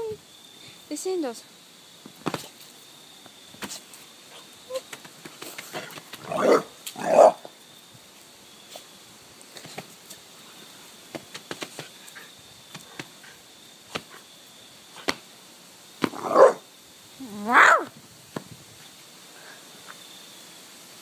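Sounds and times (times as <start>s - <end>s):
puppy barking: 6.3s - 7.4s, 16.1s - 16.6s, 17.5s - 17.9s.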